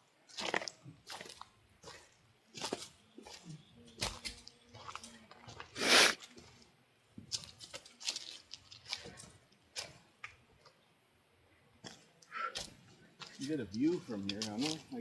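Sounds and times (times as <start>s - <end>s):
footsteps crunching on a trail: 0.0s - 10.8s, 11.8s - 15.0s.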